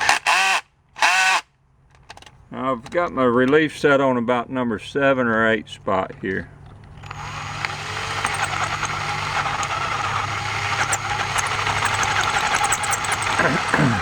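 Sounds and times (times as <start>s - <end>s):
drill bit ticking: 0.0s - 1.4s, 6.8s - 14.0s
electric drill boring into steel: 0.0s - 1.4s, 7.0s - 14.0s.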